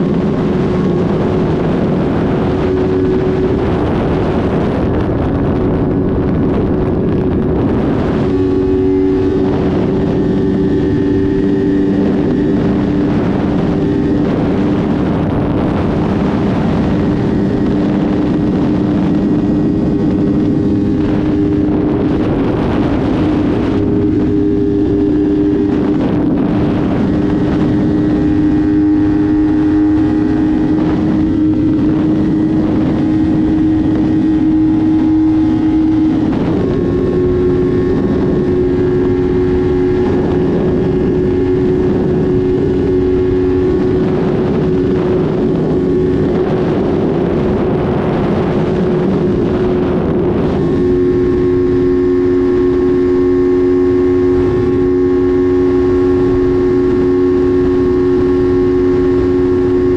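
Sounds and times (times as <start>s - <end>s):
heavy wind rush: 0.0s - 59.9s
motorcycle engine running: 0.0s - 59.9s.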